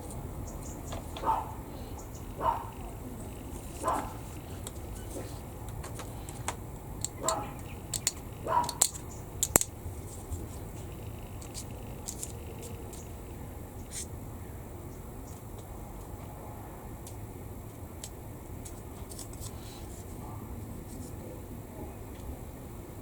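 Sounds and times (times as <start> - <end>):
plastic parts clicking and tapping: 5.7 - 9.8, 11.4 - 13.1.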